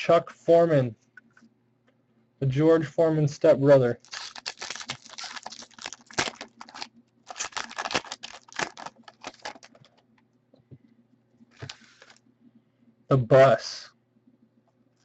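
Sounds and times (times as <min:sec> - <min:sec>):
trading cards clicking and rustling: 0:04.0 - 0:10.0, 0:11.5 - 0:12.2.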